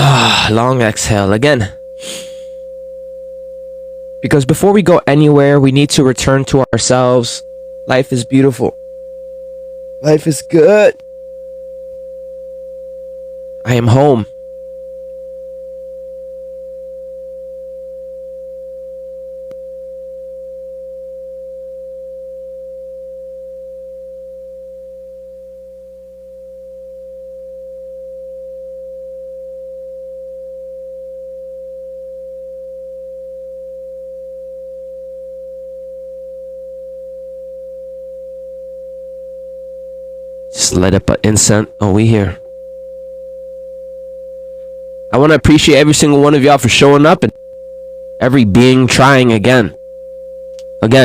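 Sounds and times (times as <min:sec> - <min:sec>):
electronic tone: 0:00.0 - 0:51.0
faint click: 0:50.5 - 0:50.7.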